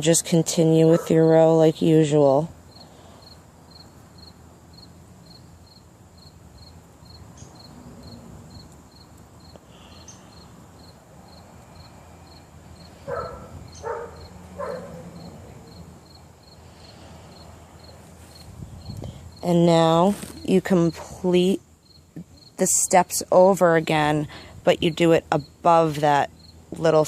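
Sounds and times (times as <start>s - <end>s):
cricket chirping: 2.7s - 19.5s, 21.8s - 22.6s, 26.4s - 26.6s.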